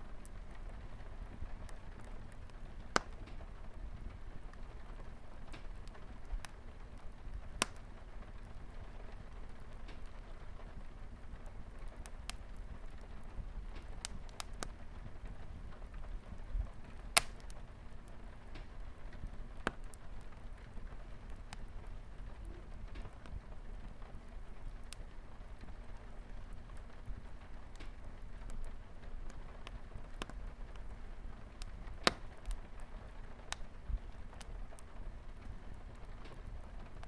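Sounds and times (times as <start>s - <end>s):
rain on a window: 0.0s - 37.0s
wood fire crackling: 0.0s - 37.0s.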